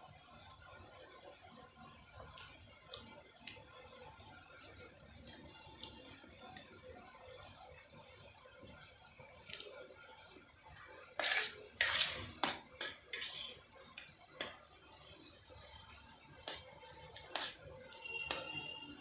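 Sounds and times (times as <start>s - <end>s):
cutlery scraping and clinking on dish: 11.2s - 13.6s, 16.4s - 17.7s.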